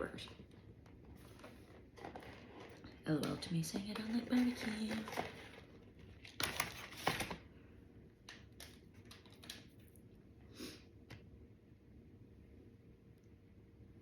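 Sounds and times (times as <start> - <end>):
food packaging rustling: 1.0 - 7.5, 8.3 - 9.9.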